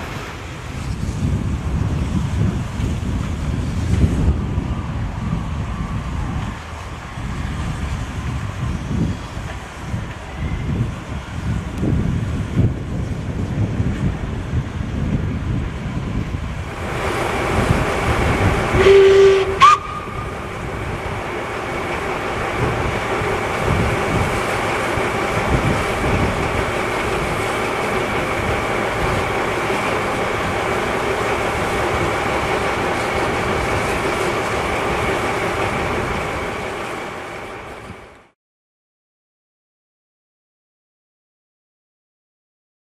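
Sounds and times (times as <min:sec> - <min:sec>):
steady locomotive noise: 0:00.0 - 0:38.4
steam locomotive whistle blast: 0:18.7 - 0:20.7.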